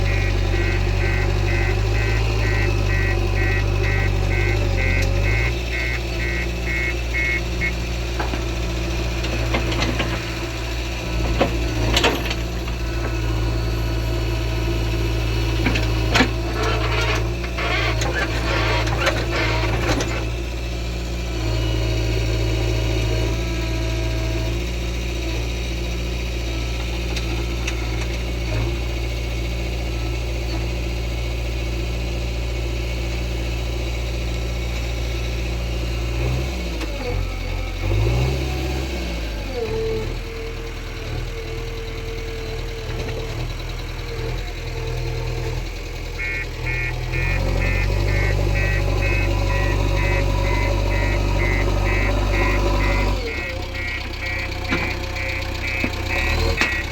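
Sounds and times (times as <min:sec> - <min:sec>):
rapid repeated high tone: 0:00.0 - 0:07.8, 0:46.2 - 0:54.5
diesel engine running: 0:00.0 - 0:56.9.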